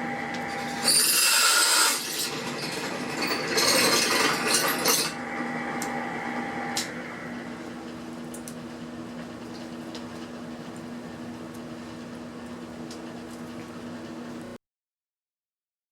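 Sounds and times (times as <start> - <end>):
low electrical hum: 0.0 - 14.6
higher electrical tone: 4.6 - 8.7.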